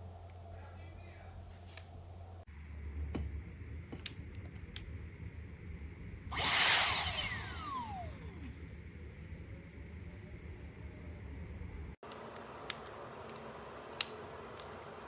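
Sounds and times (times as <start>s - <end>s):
small motor whine spinning down: 6.3s - 8.6s.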